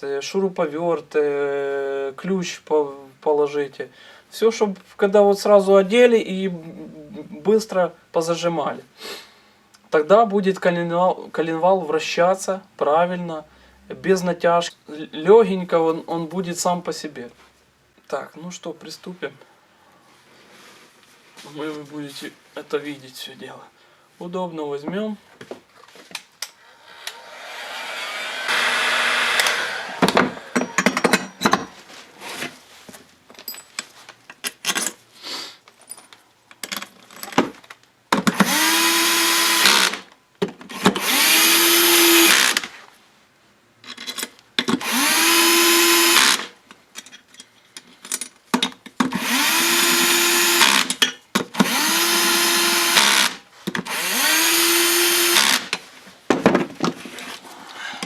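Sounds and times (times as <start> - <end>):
cordless screwdriver whine: 26.8 - 31.1, 38.4 - 40.0, 40.8 - 42.6, 44.8 - 46.4, 49.2 - 50.9, 51.6 - 55.7
parts clicking and knocking: 29.3 - 31.8, 35.7 - 38.5, 43.8 - 44.9, 46.7 - 49.2.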